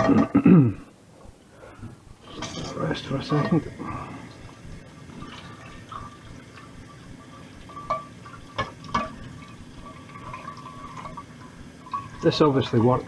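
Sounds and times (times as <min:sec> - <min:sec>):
faint steady hum: 0:00.0 - 0:13.0
utensils clinking against a pan: 0:02.3 - 0:03.7, 0:07.2 - 0:09.2, 0:09.8 - 0:13.0.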